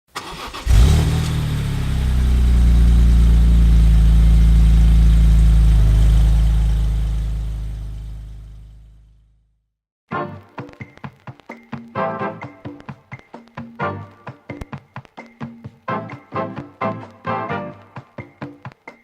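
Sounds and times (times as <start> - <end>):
car engine starting and idling: 0.1 - 9.3.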